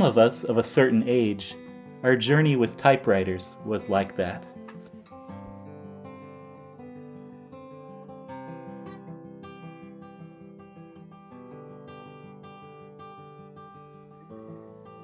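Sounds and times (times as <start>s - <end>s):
acoustic guitar picking and strumming: 0.0s - 15.0s.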